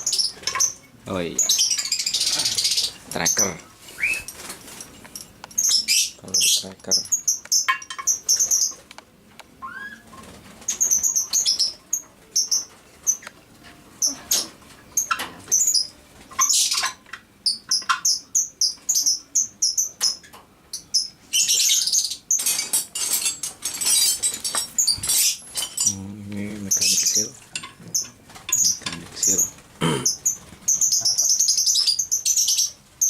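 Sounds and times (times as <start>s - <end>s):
small birds chirping: 0.0s - 33.0s.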